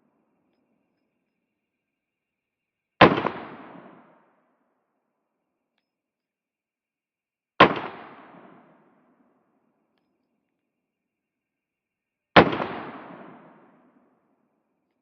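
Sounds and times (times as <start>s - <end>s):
pistol shots with echo: 3.0s - 4.2s, 7.6s - 9.1s, 12.4s - 14.0s.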